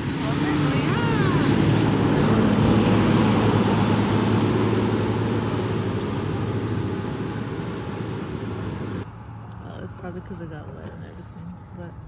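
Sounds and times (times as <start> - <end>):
engine humming: 0.0 - 9.1.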